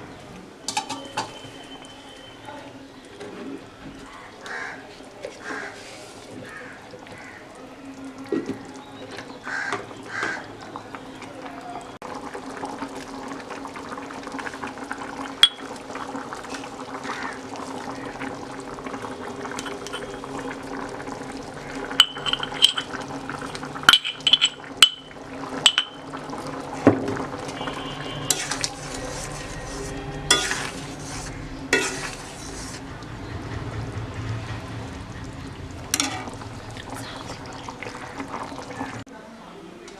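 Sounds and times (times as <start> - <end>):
metal spoon stirring in pot: 19.5 - 20.2, 21.8 - 26.0, 28.2 - 32.9, 35.9 - 36.4
spoon scraping pot: 19.5 - 20.2, 21.9 - 26.0, 28.2 - 32.9
metallic clinks against pot: 22.0 - 23.0, 23.9 - 26.0.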